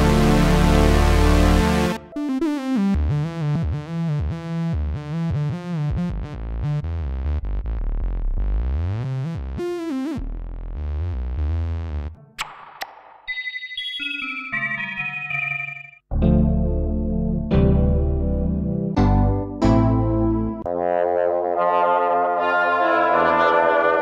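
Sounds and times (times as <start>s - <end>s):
held synthesizer sound: 0.0s - 3.0s
synthesizer short notes: 0.0s - 3.4s
pulsing low bass line: 0.0s - 12.2s, 16.1s - 20.7s.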